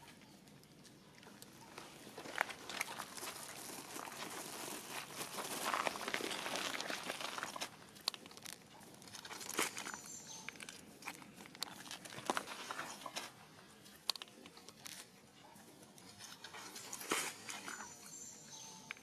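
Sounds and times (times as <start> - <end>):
small sharp clicks and crunches: 0.0 - 15.1
rustling and crinkling: 0.0 - 18.2.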